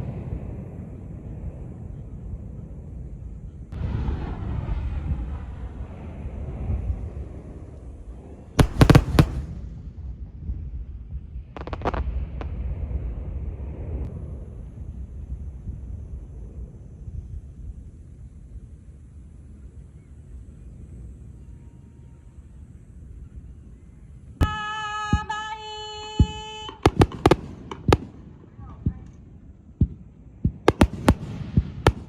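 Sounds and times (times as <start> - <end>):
low rumble: 0.0 - 18.5
wind buffeting microphone: 0.0 - 19.8
fireworks crackling bangs: 8.6 - 10.7, 11.4 - 14.0, 26.2 - 29.1, 29.8 - 32.0.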